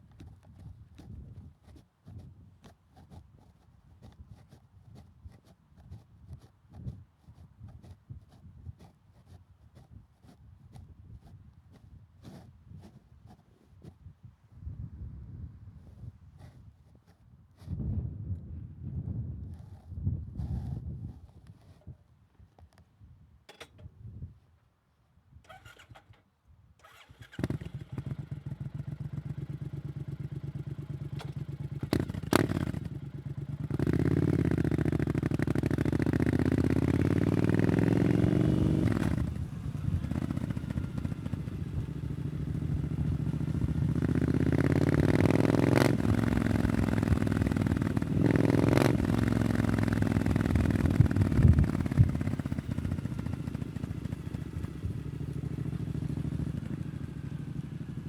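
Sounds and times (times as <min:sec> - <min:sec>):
motorcycle engine revving: 0:26.9 - 0:58.0.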